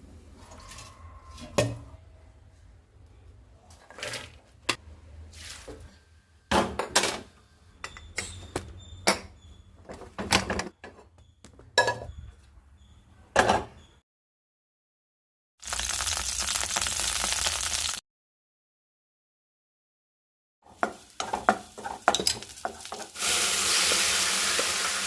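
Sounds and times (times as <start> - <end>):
kitchen utensils clattering: 21.2 - 23.1.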